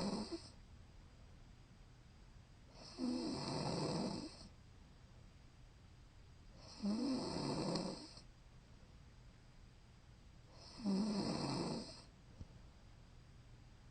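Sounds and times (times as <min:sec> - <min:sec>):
woman snoring: 0:00.0 - 0:00.6, 0:02.7 - 0:04.5, 0:06.6 - 0:08.2, 0:10.6 - 0:12.1.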